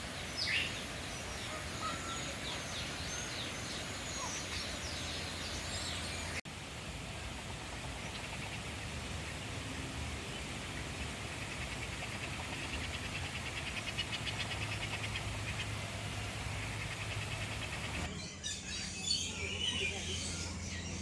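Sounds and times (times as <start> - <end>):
rapid pulsing animal trill: 10.8 - 18.1.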